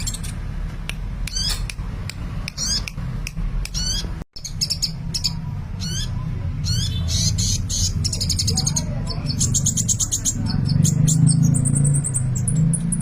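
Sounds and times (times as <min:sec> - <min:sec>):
bird chirping and twittering: 0:00.0 - 0:00.5, 0:01.2 - 0:01.8, 0:02.4 - 0:13.0.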